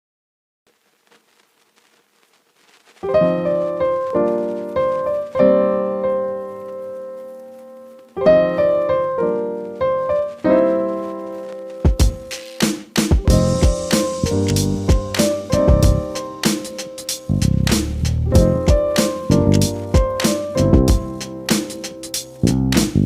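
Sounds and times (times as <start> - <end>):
drums: 11.4 - 23.0
keyboard playing chords: 13.1 - 23.0.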